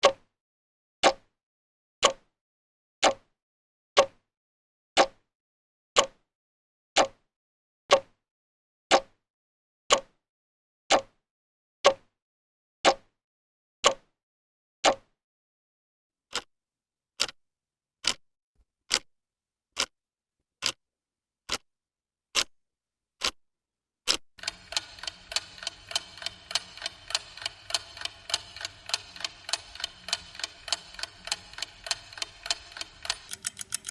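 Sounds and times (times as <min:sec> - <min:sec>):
clock ticking: 0:24.1 - 0:33.9
fast ticking: 0:24.4 - 0:33.9
steady hum: 0:24.4 - 0:33.9.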